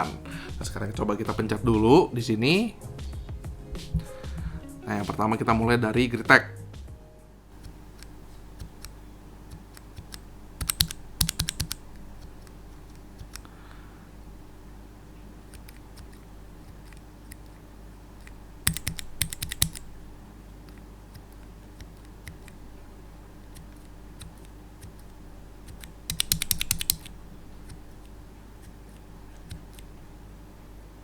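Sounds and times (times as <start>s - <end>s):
mechanical keyboard clacking: 7.6s - 13.5s, 18.2s - 19.9s, 23.6s - 28.1s.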